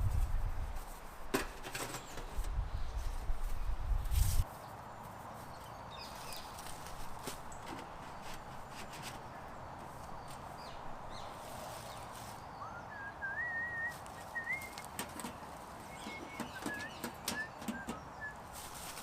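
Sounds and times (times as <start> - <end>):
faint clicks and rustles: 13.9 - 19.0.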